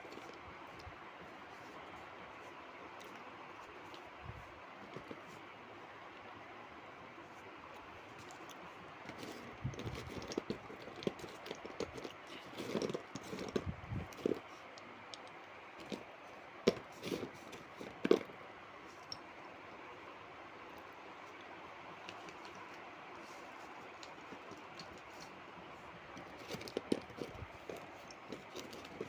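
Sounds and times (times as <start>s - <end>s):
clay items clicking and knocking: 4.8s - 5.4s, 7.7s - 19.4s, 20.7s - 29.0s
packing rustling: 8.2s - 14.6s, 26.1s - 29.0s.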